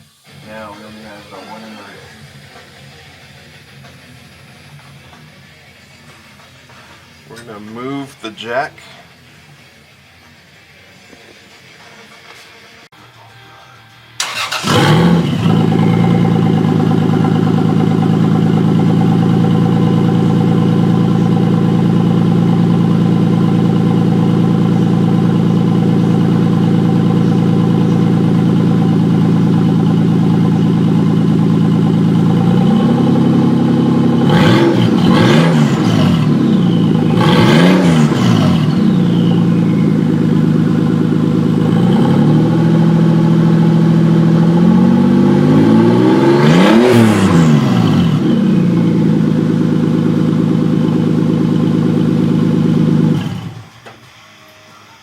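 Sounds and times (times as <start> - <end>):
car engine idling: 0.0 - 11.1, 14.2 - 54.0
car engine revving: 14.2 - 53.8
car engine cranking and starting: 14.2 - 54.1.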